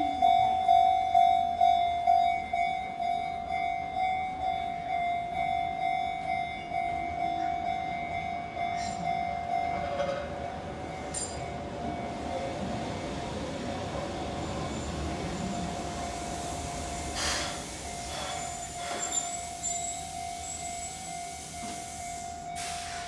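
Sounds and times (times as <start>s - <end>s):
level-crossing warning bell: 0.0s - 23.0s
train running noise: 0.0s - 23.0s.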